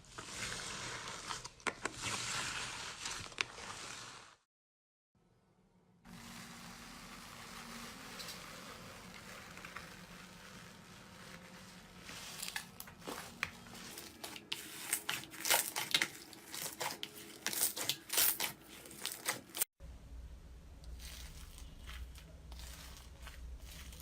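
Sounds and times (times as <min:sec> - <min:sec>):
slime crackling and popping: 0:12.3 - 0:19.6
low hum: 0:19.8 - 0:21.0.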